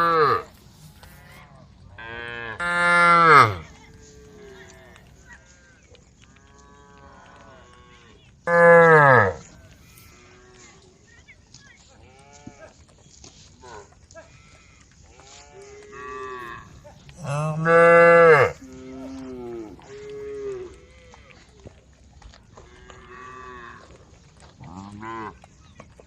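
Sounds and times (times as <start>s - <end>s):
cattle mooing: 0.0s - 1.4s, 2.0s - 5.0s, 6.5s - 10.6s, 14.4s - 21.3s, 24.6s - 25.4s.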